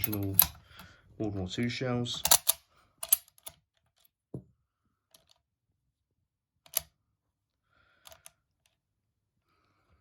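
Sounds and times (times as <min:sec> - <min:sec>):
cartridges clicking into magazine: 0:02.2 - 0:03.6.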